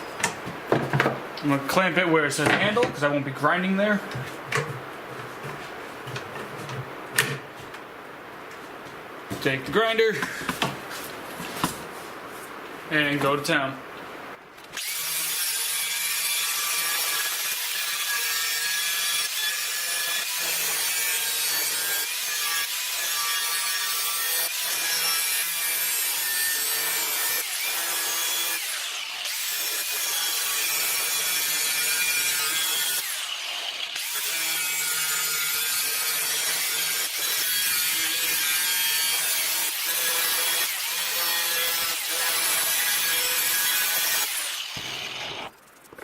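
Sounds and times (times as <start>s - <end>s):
angle grinder grinding steel: 14.8s - 45.5s.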